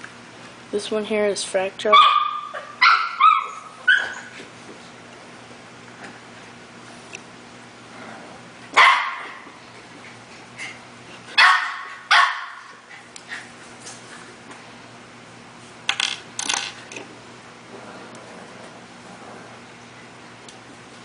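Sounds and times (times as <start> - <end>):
dog barking: 2.0 - 4.1, 8.8 - 9.4, 11.4 - 12.6.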